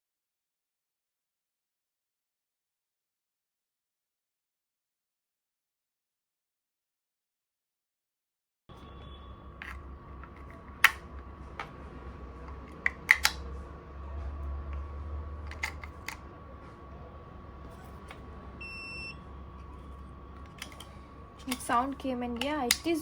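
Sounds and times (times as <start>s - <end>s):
plastic clicks and snaps: 9.6s - 11.0s, 12.5s - 13.5s, 15.5s - 16.2s, 20.4s - 23.0s.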